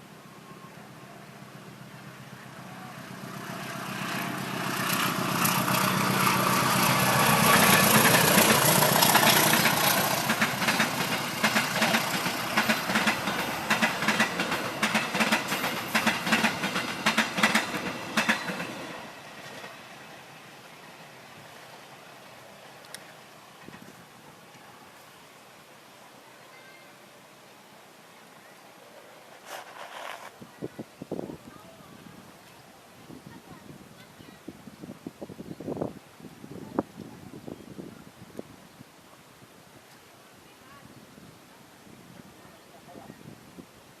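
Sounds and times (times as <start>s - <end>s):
train rumble: 0.0s - 24.6s
wheels clickety-clack: 3.3s - 19.7s.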